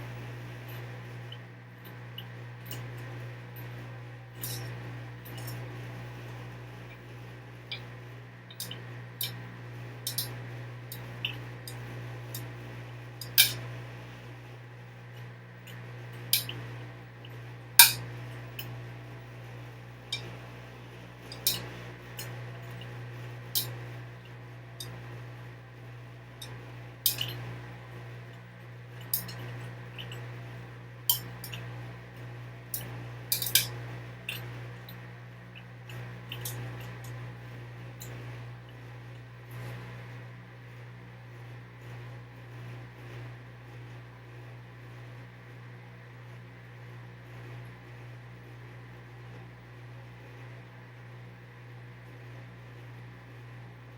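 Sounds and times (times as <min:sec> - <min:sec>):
washing machine hum: 0:00.0 - 0:53.9
sharp clinks: 0:04.4 - 0:04.7, 0:10.1 - 0:11.0, 0:27.1 - 0:27.4, 0:29.1 - 0:29.5, 0:32.8 - 0:34.5.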